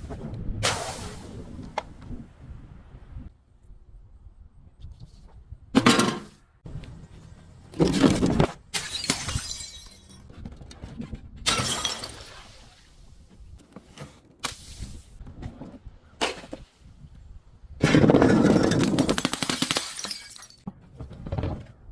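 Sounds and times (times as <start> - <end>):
glass bottles shattering: 8.7 - 10.3, 11.5 - 12.6, 18.2 - 20.7.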